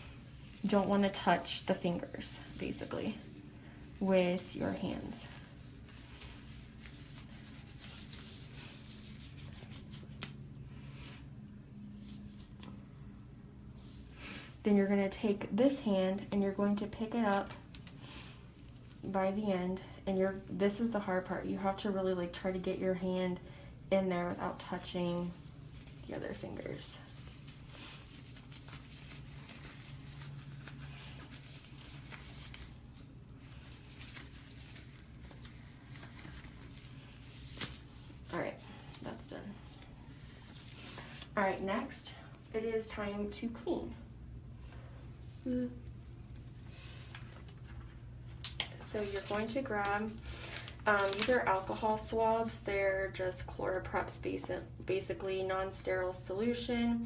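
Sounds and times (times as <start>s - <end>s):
low steady hum: 0.0s - 57.0s
rustling of glove wrapper: 25.4s - 41.4s, 47.1s - 51.9s.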